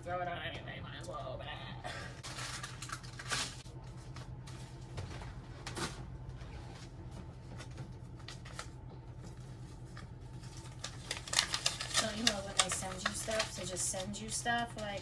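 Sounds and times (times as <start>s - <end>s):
steady low hum: 0.0s - 15.0s
paper rustling: 2.2s - 4.8s, 6.6s - 15.0s.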